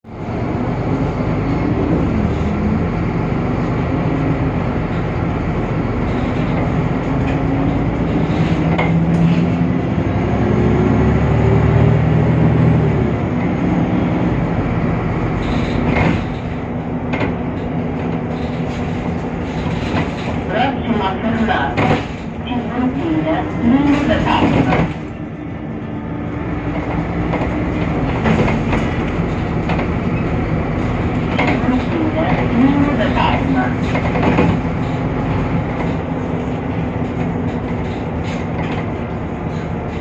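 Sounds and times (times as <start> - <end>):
bus diesel engine pulling away: 0.1 - 22.4, 23.0 - 40.0.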